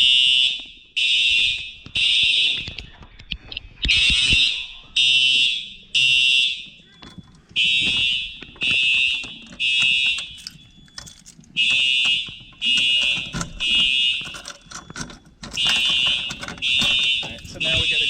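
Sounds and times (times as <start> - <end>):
fire alarm horn blasts: 0.0 - 2.7, 3.9 - 18.0
small clicks and knocks: 6.9 - 17.9.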